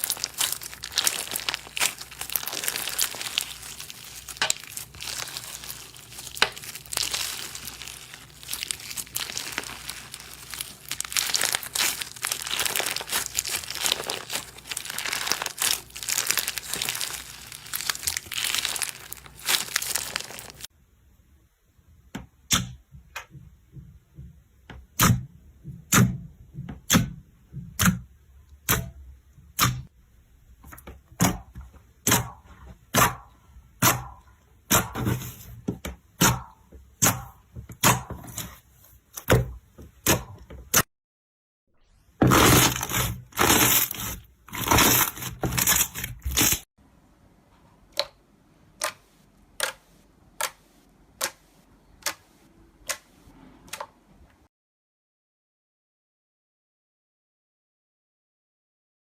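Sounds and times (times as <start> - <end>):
dense crunchy crackling: 0.0 - 20.7, 42.2 - 46.7.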